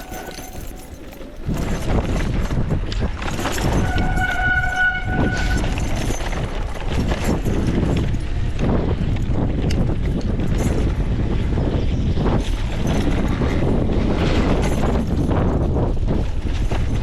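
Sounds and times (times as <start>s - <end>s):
disc brake squealing: 0.0s - 1.8s
mountain bike rattling over trail: 0.0s - 17.0s
wind on microphone: 0.0s - 17.0s.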